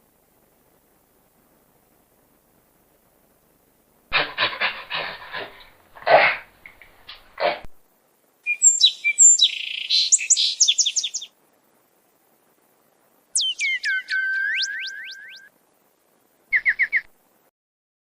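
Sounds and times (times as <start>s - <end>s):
harsh noisy bird calls: 4.1s - 7.7s, 8.4s - 11.3s, 13.4s - 15.5s, 16.5s - 17.1s
bird chirping in a fast trill: 8.5s - 11.3s, 13.4s - 15.5s, 16.5s - 17.0s
high falling whistles: 13.4s - 15.5s.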